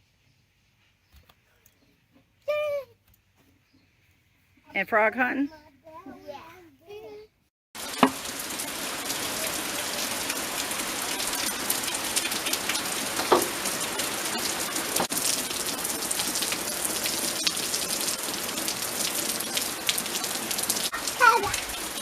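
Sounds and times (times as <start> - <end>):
rain drops ticking on surfaces: 7.8 - 22.0.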